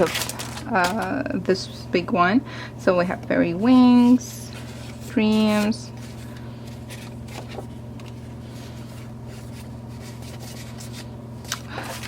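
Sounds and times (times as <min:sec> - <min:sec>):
paper cards rustling: 0:00.0 - 0:01.2, 0:03.7 - 0:12.0
low electrical hum: 0:00.0 - 0:12.0.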